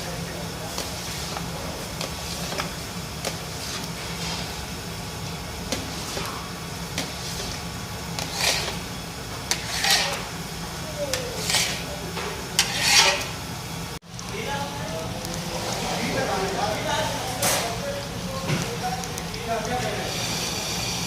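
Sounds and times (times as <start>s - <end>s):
spoon scraping a pan: 7.0s - 10.4s, 11.2s - 13.4s.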